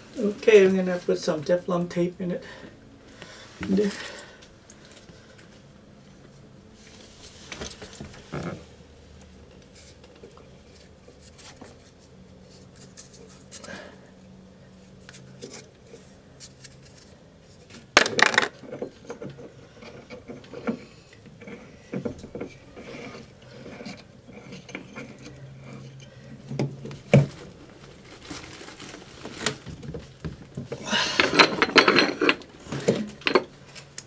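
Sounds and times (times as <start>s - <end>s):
plastic parts clicking and scraping: 16.4s - 34.0s
rustling: 26.9s - 33.9s.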